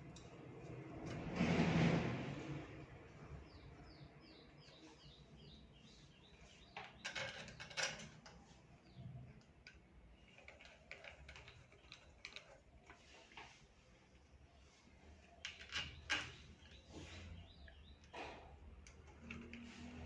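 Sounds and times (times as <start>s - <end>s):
fan parts clicking and knocking: 0.0s - 3.6s, 6.4s - 13.7s, 15.4s - 20.0s.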